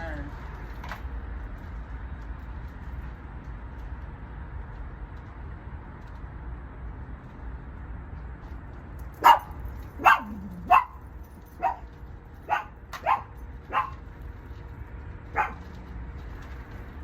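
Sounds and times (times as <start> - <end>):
dog barking: 9.2 - 11.0, 11.6 - 14.0, 15.3 - 15.7.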